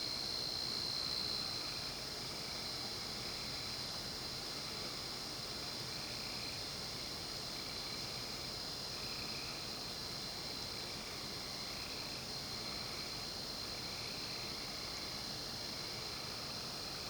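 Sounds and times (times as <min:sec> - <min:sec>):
insects buzzing: 0:00.0 - 0:17.0
soft repeating insect call: 0:00.0 - 0:17.0.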